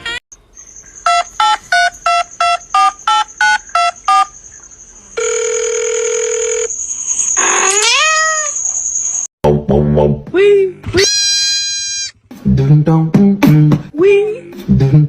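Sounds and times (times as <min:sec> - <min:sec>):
short electronic beeps: 0:01.1 - 0:04.3
cat meowing: 0:07.6 - 0:08.6, 0:11.0 - 0:12.1.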